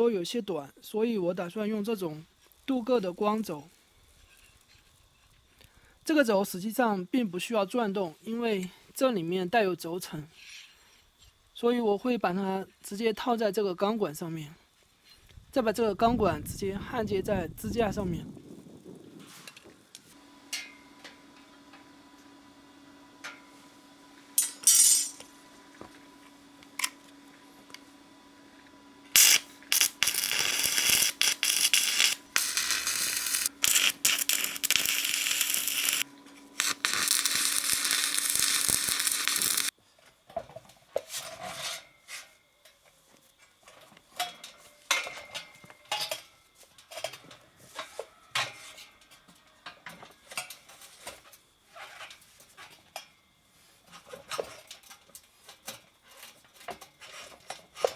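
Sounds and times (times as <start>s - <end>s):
metal parts clinking: 24.4s - 25.2s
arc welding crackling hiss: 24.4s - 25.3s, 29.1s - 39.7s.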